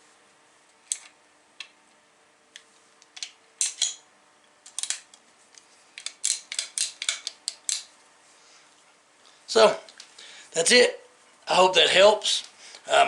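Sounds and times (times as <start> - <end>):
metal clicks of revolver parts: 3.0 - 4.0, 4.7 - 5.2, 6.0 - 7.9.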